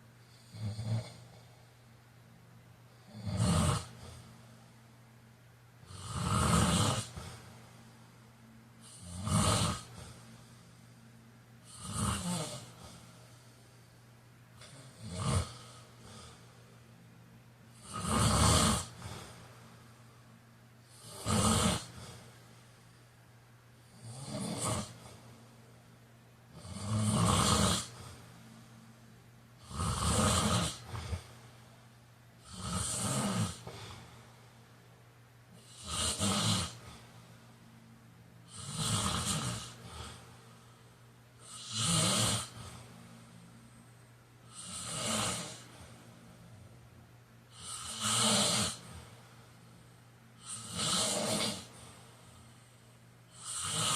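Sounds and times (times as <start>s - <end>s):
man snoring: 0.3s - 1.6s, 3.0s - 4.3s, 5.8s - 7.6s, 8.8s - 10.7s, 11.6s - 13.5s, 14.6s - 16.5s, 17.7s - 19.5s, 20.9s - 22.3s, 23.8s - 25.3s, 26.5s - 28.3s, 29.6s - 31.3s, 32.4s - 34.1s, 35.6s - 37.1s, 38.4s - 40.3s, 41.4s - 42.9s, 44.4s - 46.0s, 47.5s - 49.1s, 50.4s - 52.4s, 53.3s - 53.9s.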